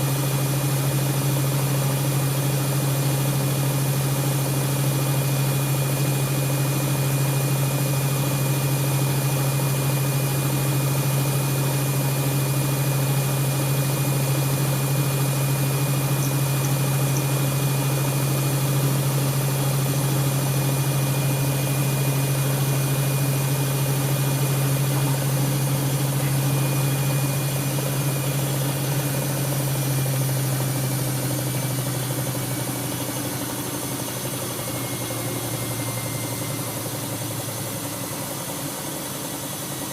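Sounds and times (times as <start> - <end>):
washing machine motor hum: 0.0 - 39.9
faint high whine: 14.8 - 39.9.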